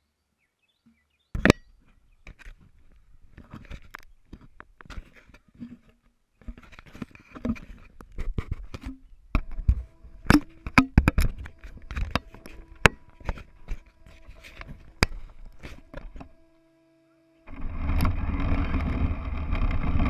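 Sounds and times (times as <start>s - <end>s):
faint motor tone: 9.4s - 20.0s.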